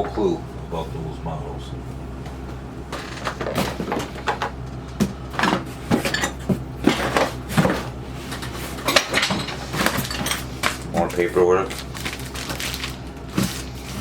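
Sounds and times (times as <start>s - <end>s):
small metal parts rattling in a box: 8.8s - 13.7s.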